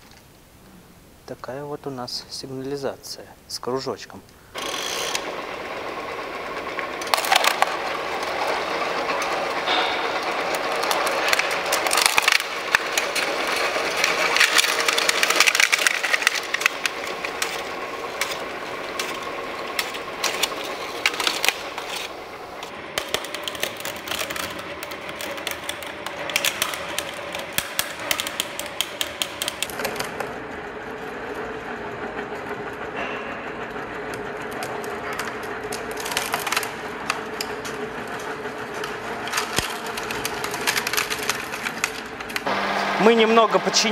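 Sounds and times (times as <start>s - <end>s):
small hard parts clicking: 4.3s - 30.4s, 34.1s - 42.5s.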